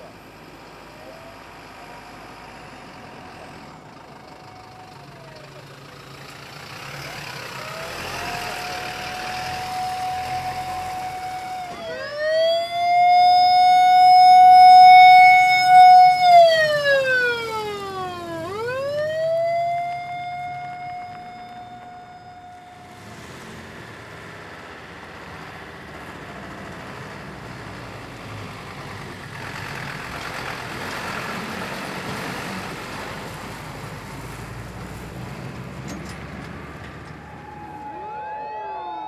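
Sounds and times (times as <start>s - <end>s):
emergency siren wailing: 0.8s - 6.0s, 6.7s - 23.1s, 36.6s - 39.0s
vehicle passing: 2.4s - 39.0s.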